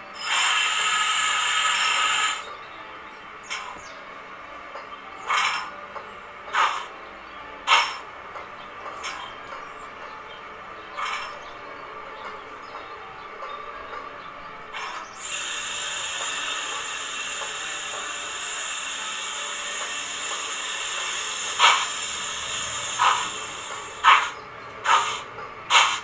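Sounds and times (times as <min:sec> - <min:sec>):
steam exhaust puffs: 0:00.0 - 0:02.6, 0:05.2 - 0:07.0, 0:07.6 - 0:08.1, 0:14.6 - 0:26.0
steam hiss from small speaker: 0:00.1 - 0:02.6, 0:14.8 - 0:26.0.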